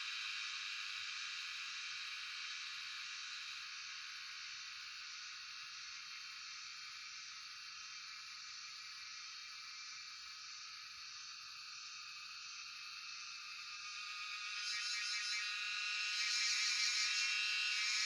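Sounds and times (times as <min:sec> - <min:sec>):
cicadas buzzing: 0:13.8 - 0:18.0.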